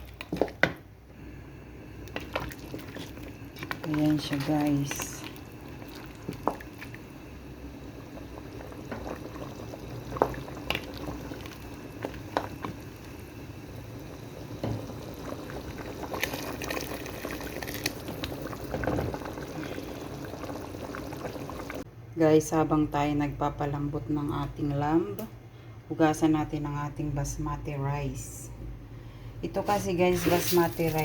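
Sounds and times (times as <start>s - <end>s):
water boiling with bubbling: 0.0s - 21.9s.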